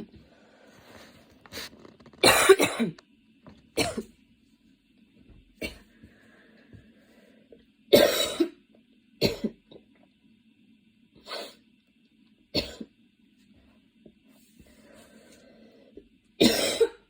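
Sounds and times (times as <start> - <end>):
girl coughing: 2.2 - 3.0, 3.8 - 4.0, 8.0 - 8.5, 16.4 - 17.0.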